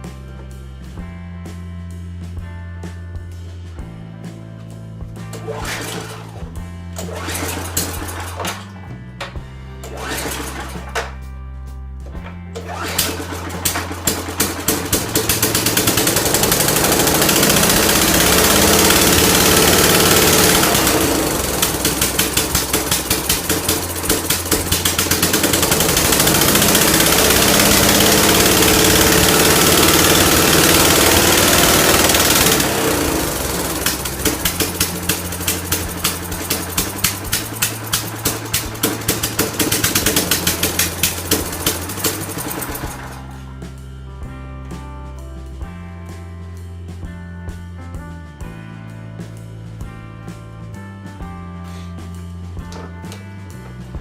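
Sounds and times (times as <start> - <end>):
snowblower engine running: 5.3 - 11.2, 12.2 - 43.8.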